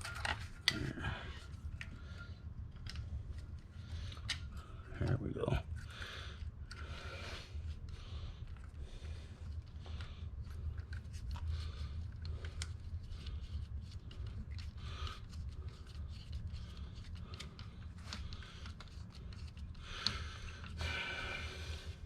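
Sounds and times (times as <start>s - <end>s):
clicks and scrapes of tools: 0.0s - 4.6s
steady low hum: 0.0s - 22.0s.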